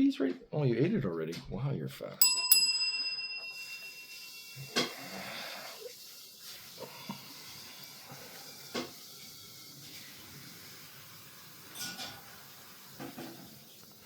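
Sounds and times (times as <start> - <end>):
low hiss: 2.1 - 14.0
small bell ringing: 2.2 - 5.9.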